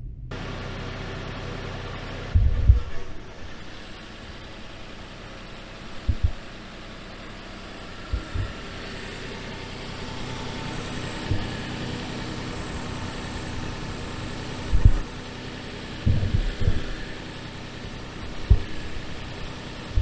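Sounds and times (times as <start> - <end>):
dull low thumps: 0.0 - 0.4, 2.3 - 4.4, 5.8 - 6.6, 7.9 - 8.7, 10.9 - 11.7, 12.7 - 15.1, 16.0 - 17.2, 18.2 - 20.0
car engine idling: 0.0 - 20.0.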